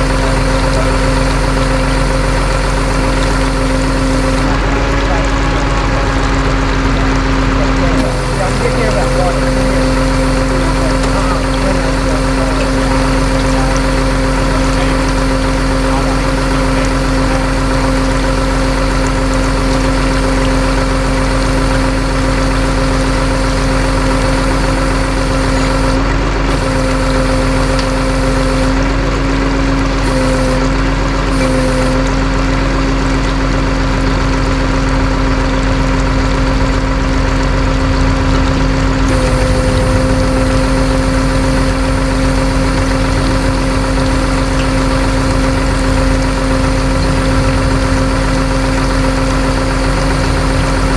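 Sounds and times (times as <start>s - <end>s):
truck engine idling: 0.0s - 50.9s.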